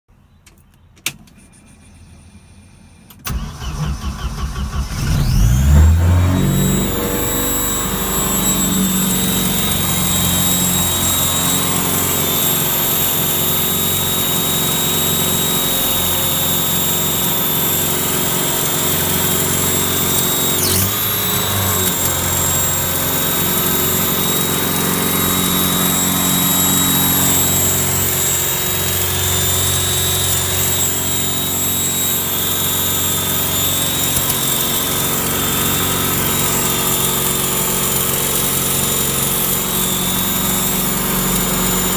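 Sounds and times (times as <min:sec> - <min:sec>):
car engine running: 0:01.3 - 0:13.0
high-pitched whine: 0:01.3 - 0:41.9.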